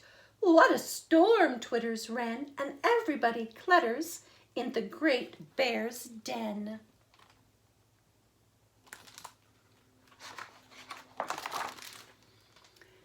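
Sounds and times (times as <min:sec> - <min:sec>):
book pages rustling: 0:07.0 - 0:07.4, 0:08.8 - 0:12.9.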